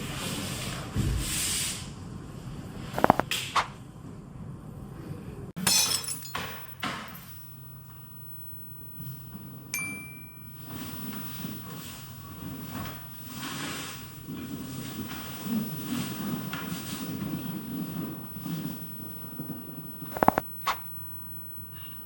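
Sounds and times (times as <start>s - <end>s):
high ringing clink: 5.6s - 6.8s, 9.8s - 10.6s.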